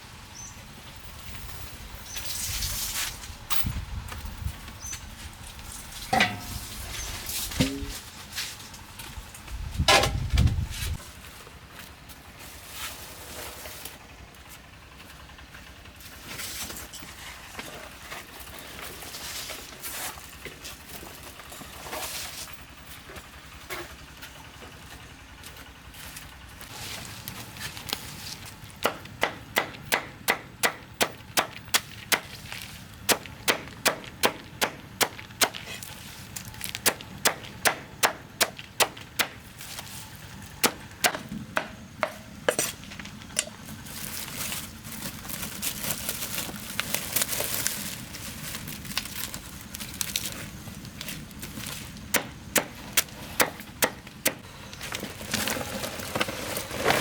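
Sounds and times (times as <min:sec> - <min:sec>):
blade chopping wood: 0:28.8 - 0:35.9, 0:36.6 - 0:39.5, 0:40.6 - 0:42.8, 0:51.4 - 0:54.5.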